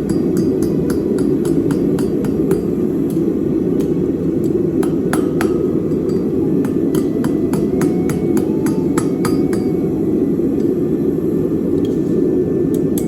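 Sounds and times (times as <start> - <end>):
hammer striking anvil: 0.0 - 3.2
low rushing noise: 2.8 - 13.0.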